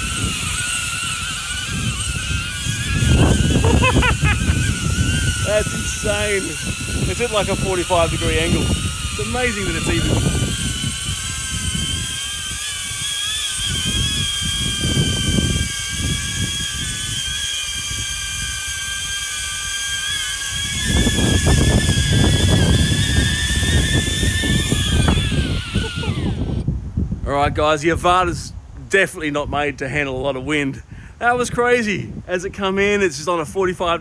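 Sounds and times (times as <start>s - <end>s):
drone propellers whining: 0.0s - 26.7s
wind rumbling on microphone: 0.0s - 34.0s.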